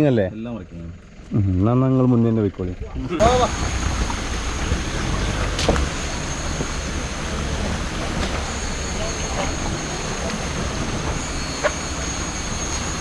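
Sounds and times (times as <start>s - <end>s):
vehicle engine rumbling: 0.0s - 13.0s
high-pitched whine: 3.0s - 13.0s.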